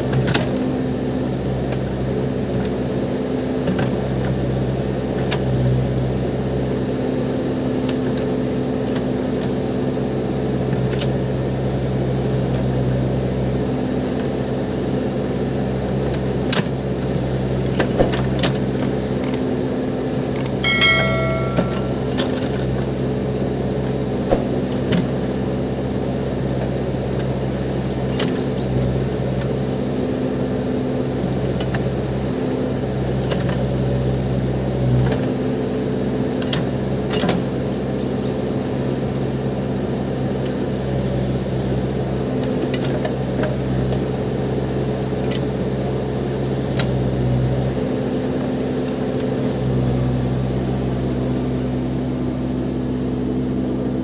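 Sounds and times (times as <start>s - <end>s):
sharp metallic knocks: 20.7s - 22.2s.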